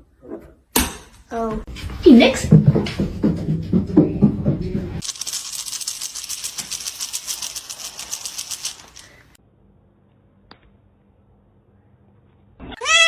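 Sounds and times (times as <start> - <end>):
fast high-pitched rattle: 5.0 - 9.4.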